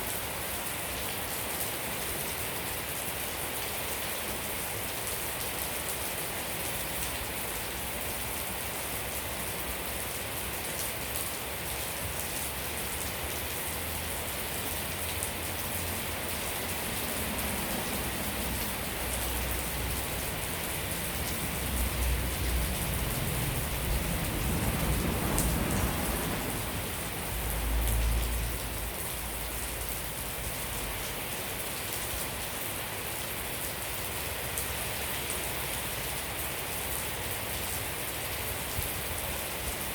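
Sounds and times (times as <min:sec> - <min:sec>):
steady rain falling: 0:00.0 - 0:39.9
low rumble: 0:19.7 - 0:28.6.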